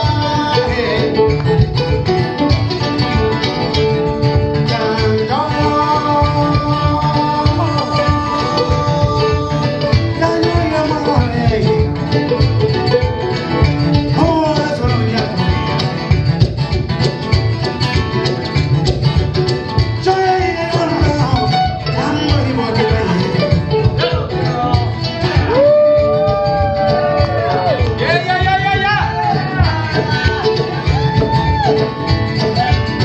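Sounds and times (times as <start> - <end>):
sliding held melody line: 0.0 - 16.2
plucked string-band music: 0.0 - 33.0.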